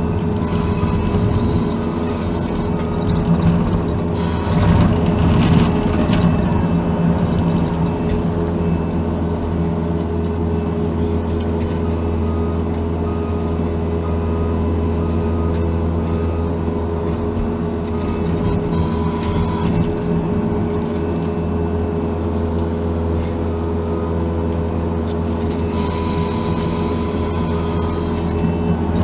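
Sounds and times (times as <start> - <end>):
diesel engine running: 0.0 - 29.0
clatter: 0.4 - 8.8.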